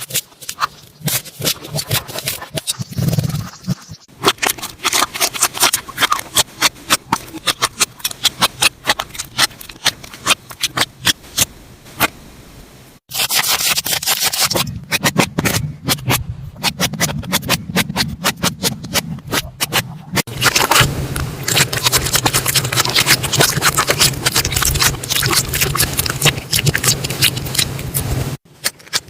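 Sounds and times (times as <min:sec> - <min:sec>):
low hum: 0:20.3 - 0:25.2.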